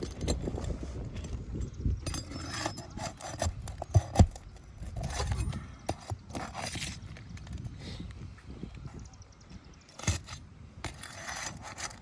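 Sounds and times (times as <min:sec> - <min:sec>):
tools scraping roof shingles: 0:00.0 - 0:07.4, 0:09.9 - 0:12.0.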